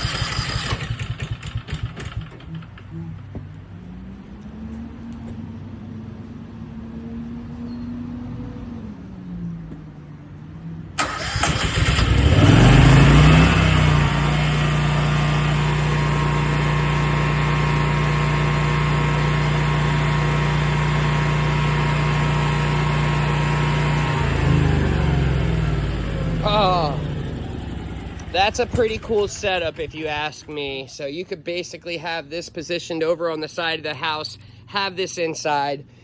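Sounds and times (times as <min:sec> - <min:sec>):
loud engine revving: 0:00.0 - 0:02.4, 0:11.0 - 0:30.2
generator engine running quietly: 0:00.0 - 0:05.6, 0:11.0 - 0:36.0.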